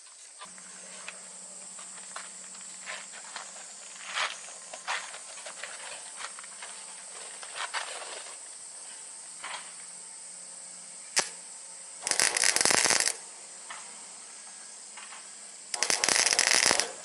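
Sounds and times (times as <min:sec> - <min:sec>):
welder humming: 0:00.4 - 0:07.4, 0:10.8 - 0:14.2, 0:15.0 - 0:17.0
welding arc sputtering and popping: 0:11.2 - 0:11.4, 0:12.0 - 0:13.3, 0:15.7 - 0:17.0.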